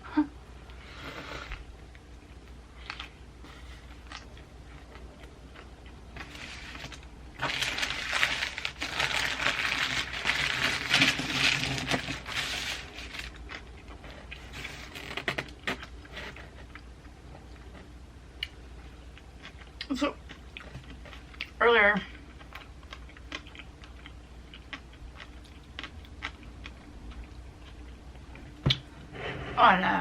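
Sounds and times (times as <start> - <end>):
sandwich crunching while eaten: 2.8 - 16.9.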